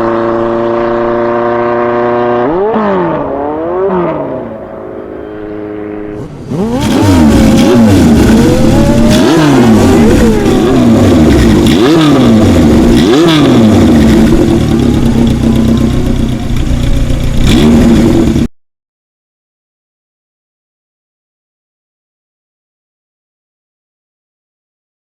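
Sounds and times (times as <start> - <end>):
motorcycle engine revving: 0.0 - 18.5.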